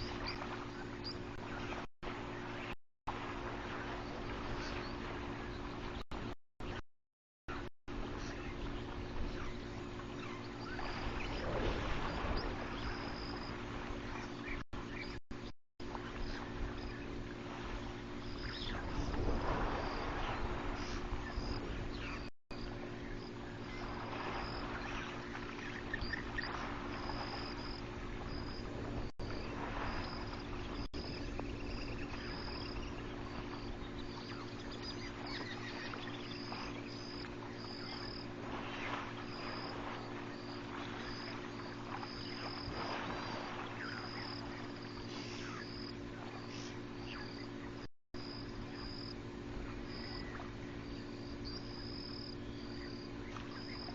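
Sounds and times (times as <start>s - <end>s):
steady low hum: 0.0s - 6.8s, 7.5s - 53.9s
insects chirping: 10.4s - 13.8s, 16.2s - 53.9s.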